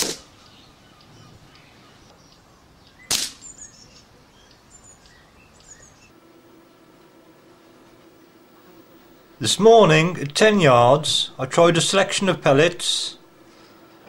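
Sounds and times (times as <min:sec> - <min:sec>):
air rifle shots: 0:00.0 - 0:00.3, 0:03.1 - 0:03.5
small birds chirping: 0:00.2 - 0:06.2.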